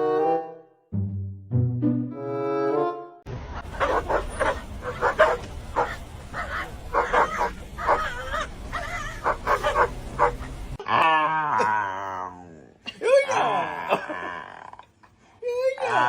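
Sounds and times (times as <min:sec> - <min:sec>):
dog yipping and whining: 0:03.7 - 0:10.6.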